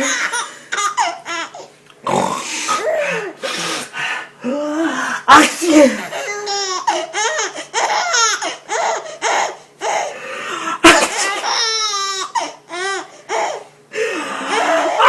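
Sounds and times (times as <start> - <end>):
baby laughing: 0.0 - 1.7, 6.1 - 10.1, 10.8 - 13.6
man sneezing: 2.3 - 4.0.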